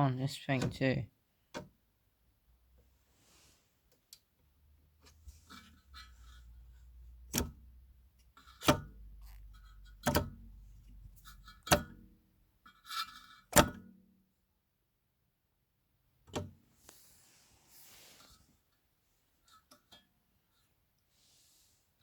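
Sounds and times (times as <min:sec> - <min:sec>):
sharp knocks and clicks of parts: 0:01.5 - 0:01.8, 0:07.2 - 0:12.1, 0:16.2 - 0:16.6.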